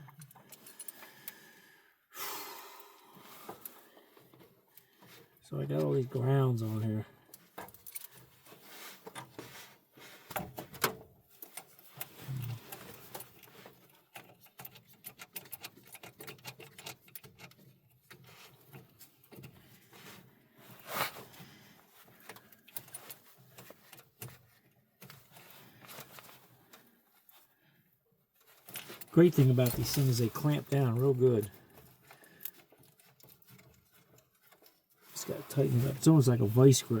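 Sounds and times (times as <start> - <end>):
metal clamps clicking and rattling: 12.8 - 19.5.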